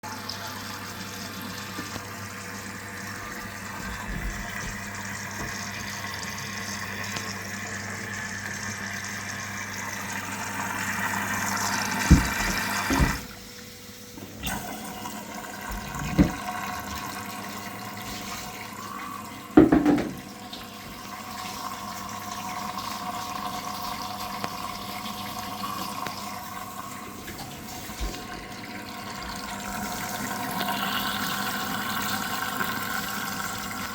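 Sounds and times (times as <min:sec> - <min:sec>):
water running: 0:00.0 - 0:33.9.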